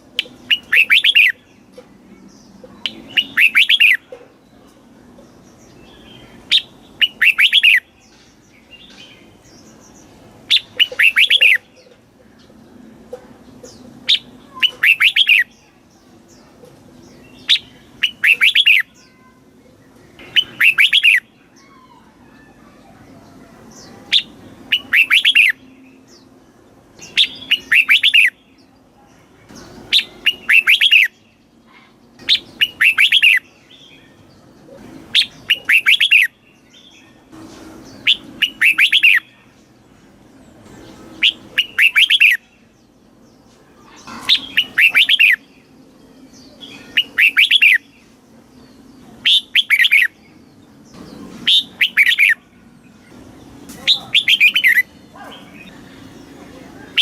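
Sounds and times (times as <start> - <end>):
bulbul singing: 0.0 - 57.0.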